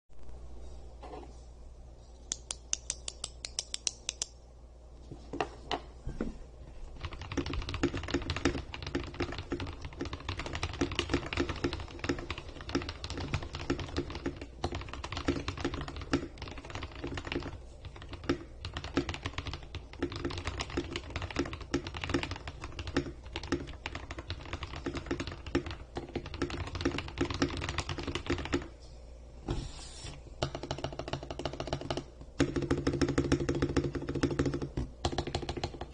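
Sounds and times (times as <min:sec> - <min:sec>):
fast typing on mechanical keyboard: 0:07.0 - 0:28.7, 0:30.4 - 0:35.9.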